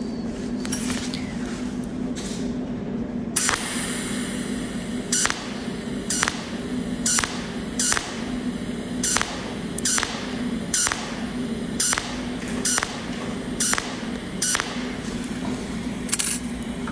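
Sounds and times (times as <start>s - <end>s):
steady low hum: 0.0s - 16.9s
arc welding crackling: 3.4s - 16.9s.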